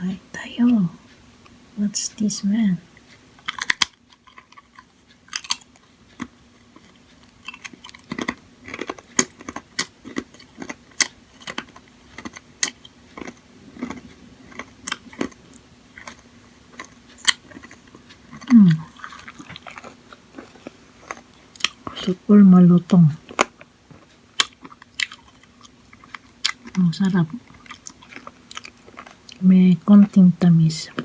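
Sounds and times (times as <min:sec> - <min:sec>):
crunching and chewing snack: 0:03.4 - 0:22.2, 0:23.2 - 0:29.4
person humming: 0:18.5 - 0:18.9.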